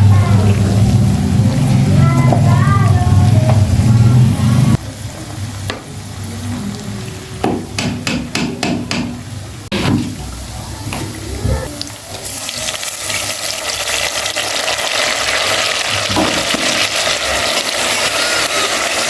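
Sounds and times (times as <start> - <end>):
loud low hum: 0.0 - 4.8
spoon knocking in a pot: 7.4 - 9.2.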